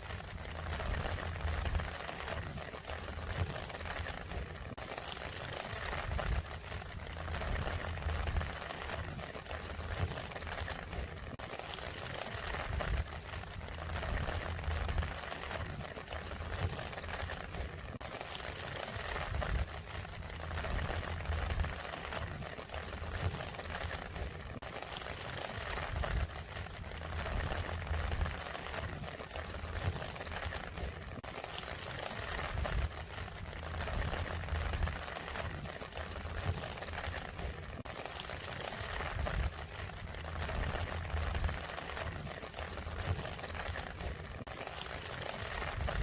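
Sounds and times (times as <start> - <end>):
rain pattering: 0.0 - 46.0
low rumble: 0.3 - 2.4, 6.0 - 9.0, 12.6 - 15.5, 19.2 - 21.9, 25.8 - 31.0, 32.4 - 37.5, 39.0 - 41.9.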